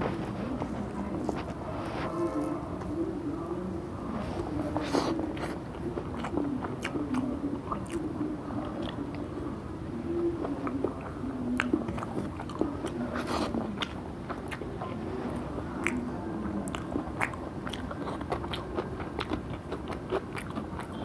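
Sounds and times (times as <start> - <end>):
person chewing food: 4.7 - 9.2, 10.4 - 21.0.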